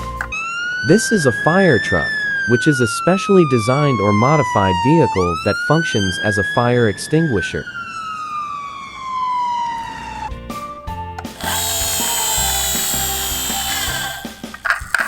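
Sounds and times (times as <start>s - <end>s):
toy fire truck siren: 0.4s - 10.3s
harsh buzzing whir: 11.2s - 15.0s
toy clicks: 11.2s - 15.0s.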